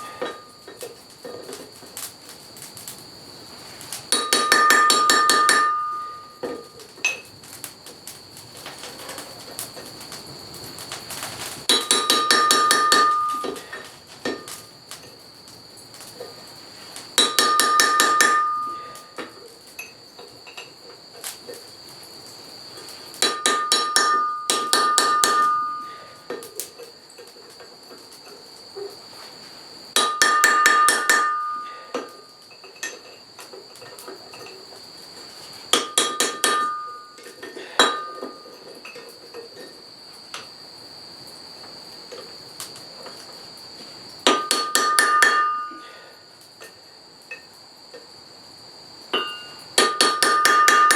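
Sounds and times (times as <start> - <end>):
steady high-pitched whine: 0.0 - 50.9
hammer striking iron on anvil: 4.1 - 6.6, 11.7 - 13.6, 17.2 - 18.9, 23.2 - 26.0, 30.0 - 32.1, 35.8 - 37.2, 44.3 - 45.8, 49.2 - 50.9
small metal clinks: 11.4 - 15.2, 17.2 - 21.7, 22.9 - 28.5, 30.0 - 34.8, 35.5 - 39.8, 44.2 - 46.0.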